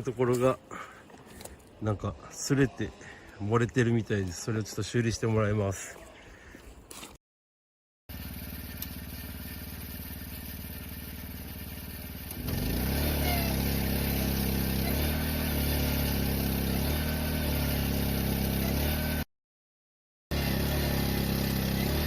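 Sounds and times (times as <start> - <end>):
engine running: 8.1 - 19.3, 20.3 - 22.0.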